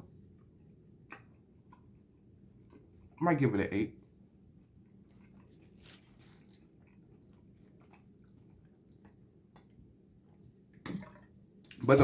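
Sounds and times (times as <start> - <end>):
person chewing candy: 4.6 - 9.8.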